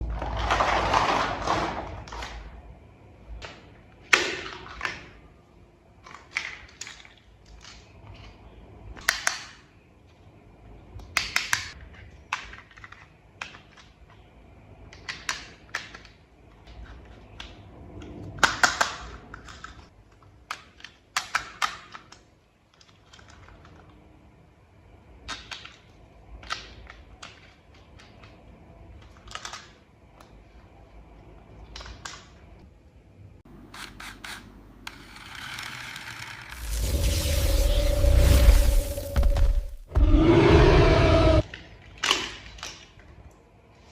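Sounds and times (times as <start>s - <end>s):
plastic toy parts snapping together: 20.4s - 23.4s, 29.1s - 29.8s, 42.0s - 43.1s.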